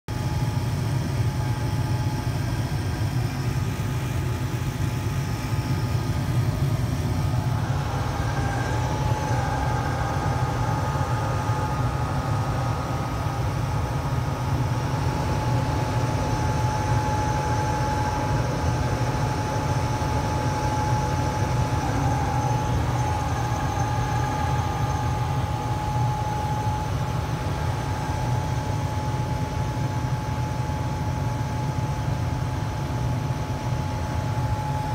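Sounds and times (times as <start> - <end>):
steady high whine: 0.1 - 34.9
furnace blower motor grinding: 2.8 - 30.2.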